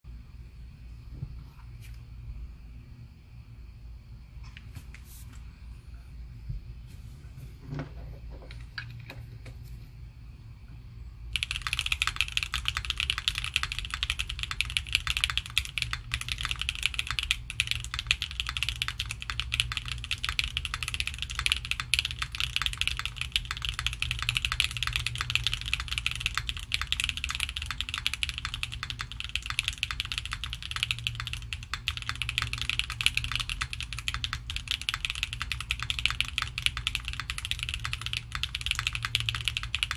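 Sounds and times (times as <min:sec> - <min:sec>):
mechanical keyboard typing: 0:11.3 - 0:39.9.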